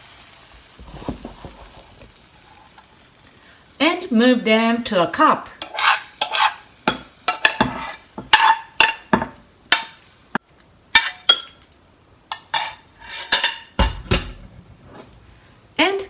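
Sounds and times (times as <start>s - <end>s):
utensils clinking against pot: 5.6s - 10.0s, 11.0s - 14.4s.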